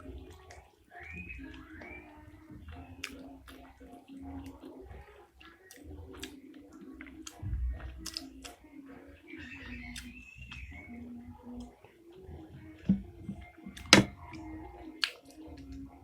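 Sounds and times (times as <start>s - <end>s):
wet chewing and mouth clicks: 0.2s - 8.7s, 9.8s - 10.8s, 14.9s - 15.8s.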